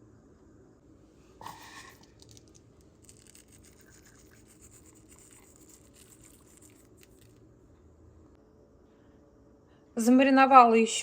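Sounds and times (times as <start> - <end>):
scratchy rubbing of hands: 1.4 - 7.4.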